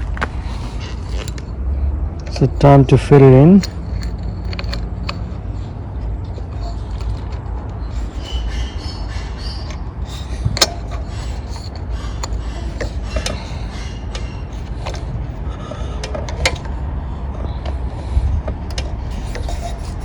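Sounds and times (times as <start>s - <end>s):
engine parts clicking and knocking: 0.0s - 20.0s
steady low rumble: 0.0s - 20.0s.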